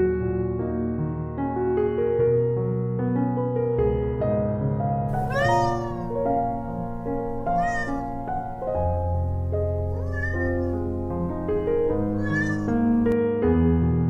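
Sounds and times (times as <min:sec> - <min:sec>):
soft piano music: 0:00.0 - 0:14.0
cat meowing: 0:05.1 - 0:13.2.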